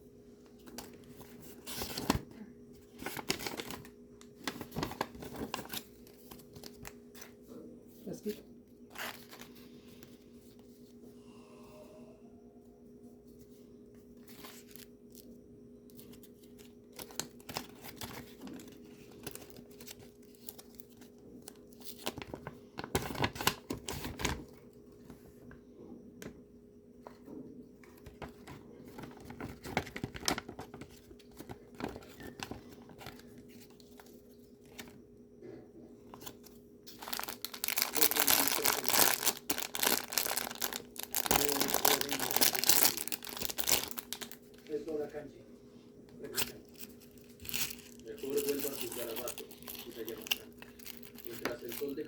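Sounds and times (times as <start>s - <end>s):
faint steady hum: 0.0s - 52.0s
plastic packaging crinkling: 2.8s - 7.0s, 15.9s - 24.6s, 28.0s - 35.0s, 36.1s - 44.8s, 46.2s - 52.0s.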